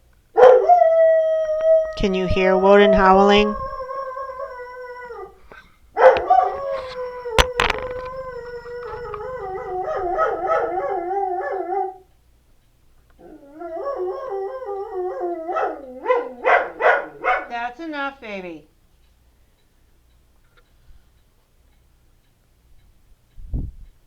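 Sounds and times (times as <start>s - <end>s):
dog howling and yipping: 0.4s - 12.0s, 13.2s - 17.6s
sharp clicks: 6.1s - 11.1s.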